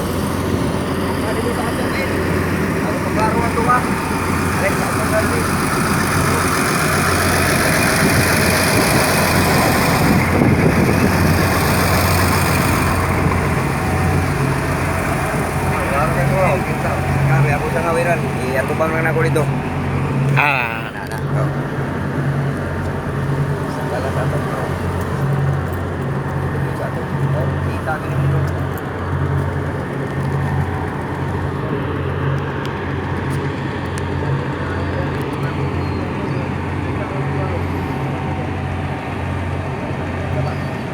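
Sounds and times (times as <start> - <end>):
diesel engine drone: 0.0 - 40.9.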